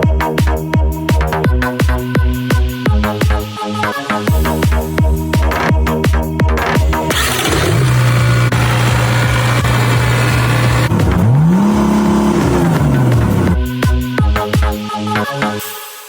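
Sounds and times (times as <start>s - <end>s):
electronic music: 0.0s - 16.0s
truck engine revving: 6.9s - 13.6s.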